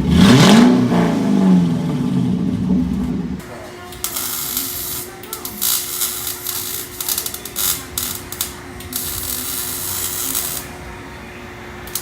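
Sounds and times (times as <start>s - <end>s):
steady hum: 0.8s - 12.0s
pneumatic ratchet rattling: 4.0s - 10.7s.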